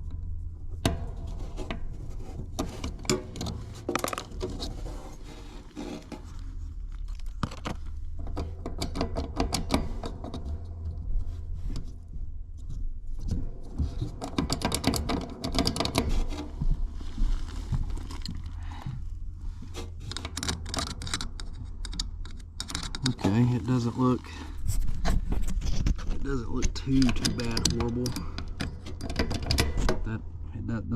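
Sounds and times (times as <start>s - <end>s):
steady low hum: 0.0s - 30.9s
metallic clicks and scrapes of tools: 19.8s - 30.1s.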